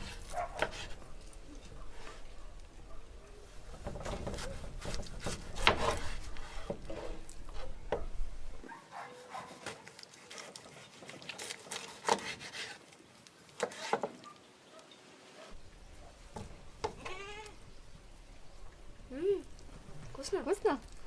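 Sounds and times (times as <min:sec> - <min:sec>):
rubbing and scraping: 0:00.0 - 0:02.5, 0:03.4 - 0:08.2.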